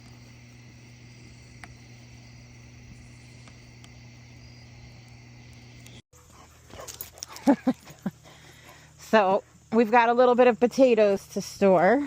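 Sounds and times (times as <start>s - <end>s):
insect chirring: 0.0s - 6.0s
low steady hum: 0.0s - 6.0s.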